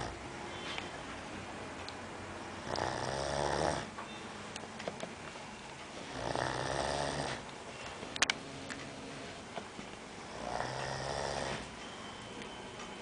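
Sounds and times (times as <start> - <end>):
man snoring: 2.6 - 3.9, 6.1 - 7.4, 10.2 - 11.7.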